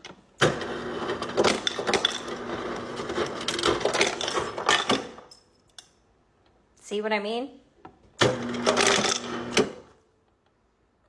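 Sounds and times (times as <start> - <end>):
ice cubes clattering: 0.9 - 5.2
motor hum: 8.2 - 9.8.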